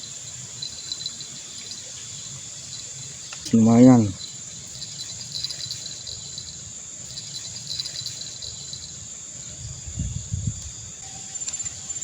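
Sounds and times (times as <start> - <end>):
insects chirping: 0.0 - 12.0.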